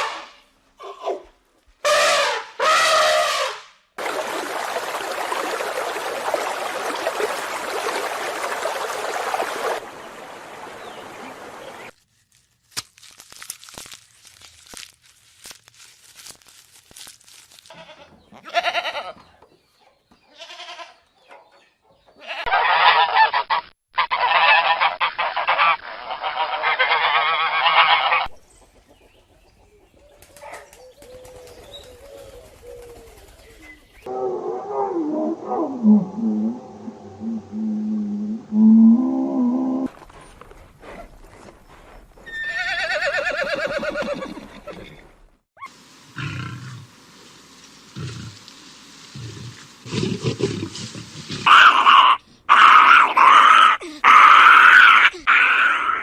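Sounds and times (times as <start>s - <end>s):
geese honking: 22.5s - 28.3s
horse whinnying: 42.2s - 45.1s.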